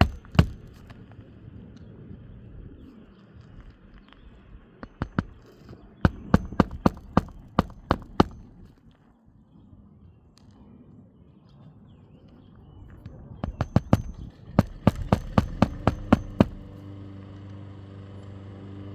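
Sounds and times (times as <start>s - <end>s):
nails driven into roof shingles: 0.0s - 1.1s, 4.8s - 8.8s, 13.4s - 16.9s.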